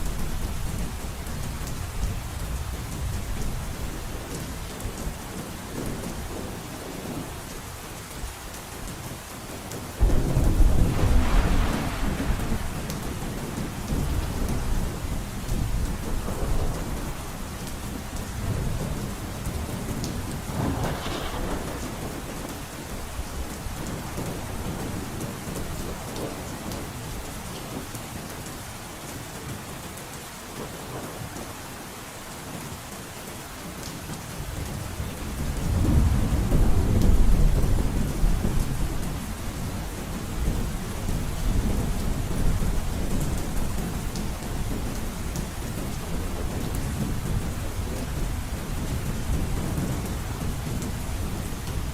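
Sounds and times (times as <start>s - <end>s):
heavy rain drumming on a roof: 0.0s - 51.9s
rolling thunder rumbles: 10.0s - 26.8s, 34.8s - 51.9s.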